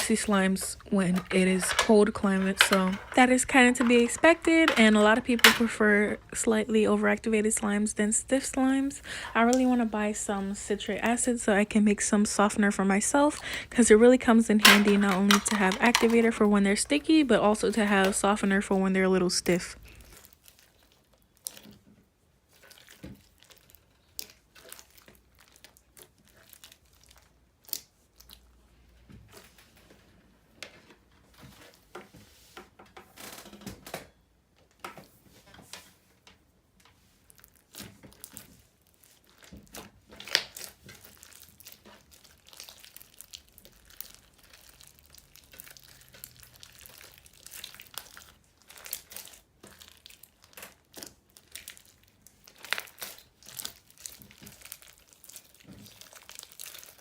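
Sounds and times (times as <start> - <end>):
slime squishing and crackling: 19.8 - 28.7, 37.1 - 57.0.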